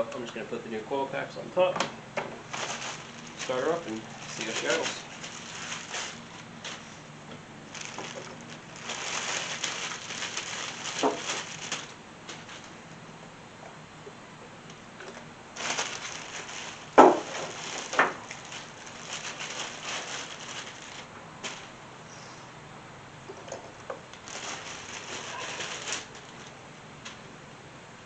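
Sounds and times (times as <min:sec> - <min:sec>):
rustling and crinkling: 0:02.3 - 0:13.0, 0:15.0 - 0:21.8, 0:23.3 - 0:27.2.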